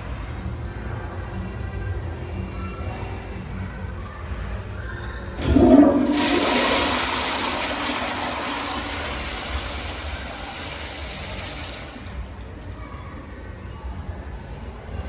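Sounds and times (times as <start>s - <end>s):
toilet flushing: 5.3s - 12.4s.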